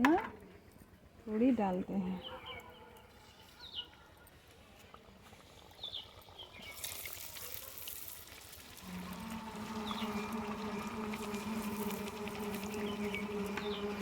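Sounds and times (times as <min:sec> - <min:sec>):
food sizzling in hot oil: 0:06.6 - 0:14.0.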